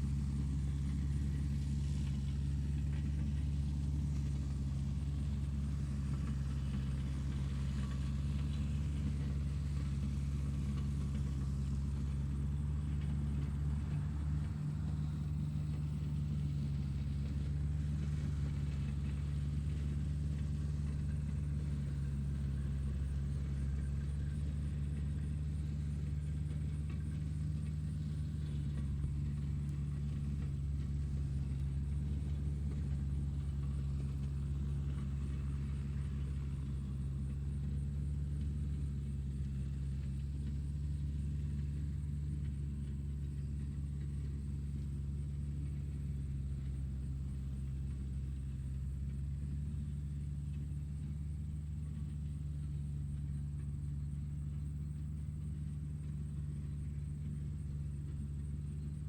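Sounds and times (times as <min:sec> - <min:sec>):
tractor engine droning: 0:00.0 - 0:59.0.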